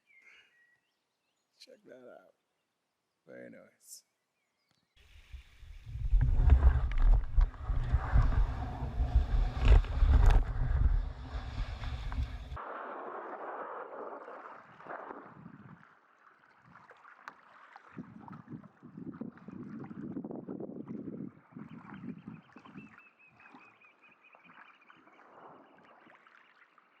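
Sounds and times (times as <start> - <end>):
faint rushing noise: 5.1 - 12.7
wind buffeting microphone: 5.2 - 12.6, 14.7 - 15.8, 18.0 - 23.0.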